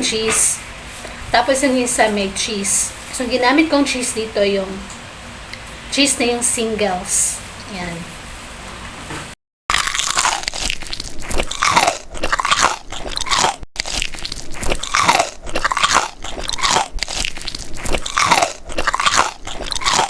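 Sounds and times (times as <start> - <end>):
chewing sandwich: 9.7 - 20.0.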